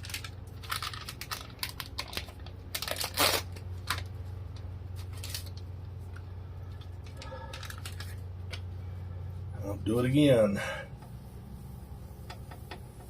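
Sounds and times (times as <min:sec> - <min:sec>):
packaging crinkling and tearing: 0:00.0 - 0:05.7, 0:06.8 - 0:08.3
steady low hum: 0:00.0 - 0:13.0.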